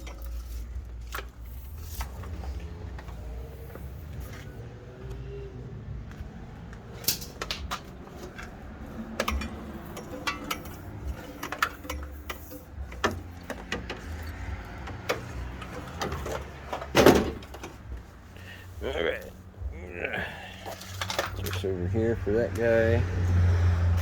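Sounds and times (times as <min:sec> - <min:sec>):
things being handled clicking: 0:00.0 - 0:04.5, 0:06.7 - 0:18.0, 0:20.6 - 0:21.7.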